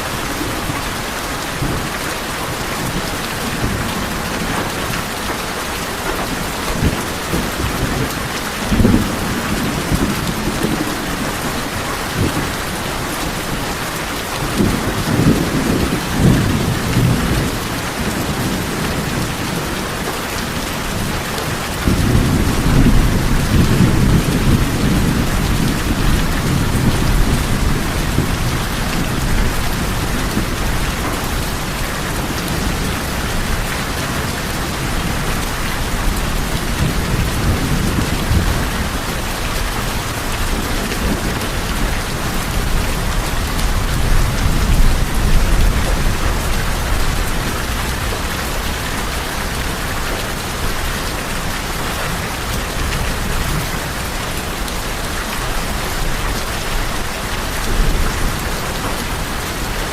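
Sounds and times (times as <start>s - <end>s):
rain on a tin roof: 0.0s - 59.9s.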